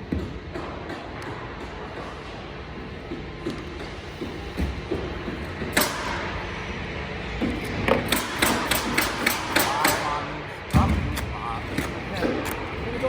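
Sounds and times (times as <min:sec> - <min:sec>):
hammer driving nails: 0:05.3 - 0:06.3, 0:07.4 - 0:12.6.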